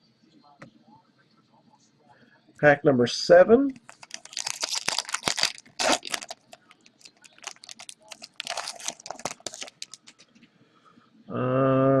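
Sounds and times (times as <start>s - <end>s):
wrapper tearing and crinkling: 3.8s - 10.2s.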